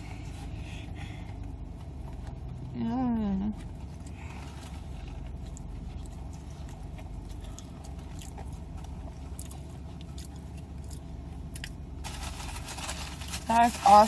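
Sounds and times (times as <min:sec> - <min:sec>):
steady low hum: 0:00.0 - 0:14.0
person chewing: 0:03.9 - 0:11.8.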